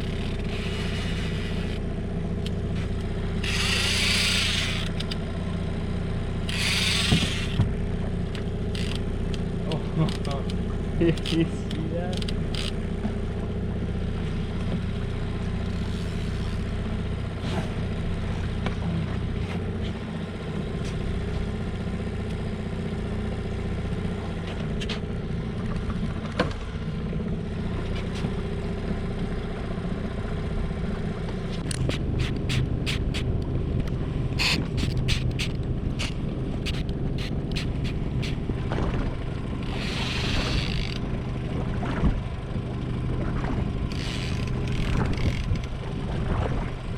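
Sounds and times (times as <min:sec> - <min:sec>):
boat engine running: 0:00.0 - 0:46.9
sharp clicks: 0:02.4 - 0:05.2, 0:31.6 - 0:38.4.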